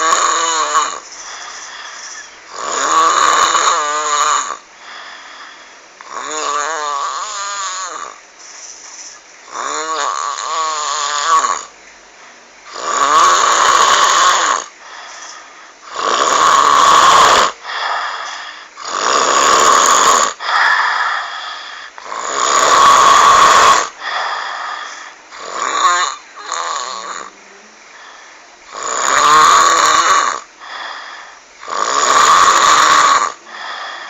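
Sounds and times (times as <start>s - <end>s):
person snoring loudly: 0.0s - 4.7s, 6.0s - 8.2s, 9.4s - 11.7s, 12.7s - 27.4s, 28.7s - 34.0s
quiet breaths: 0.0s - 10.9s, 14.3s - 16.0s, 17.5s - 18.9s, 20.2s - 22.4s, 23.3s - 34.0s.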